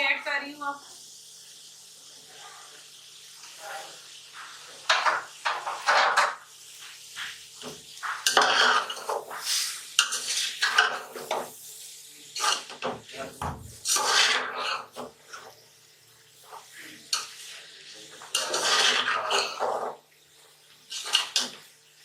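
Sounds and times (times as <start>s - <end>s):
vegetables stir-frying in oil: 0.0s - 22.0s
spoon scraping a pot: 8.0s - 11.4s, 12.4s - 12.8s, 13.8s - 15.5s, 18.2s - 20.0s, 20.9s - 21.6s.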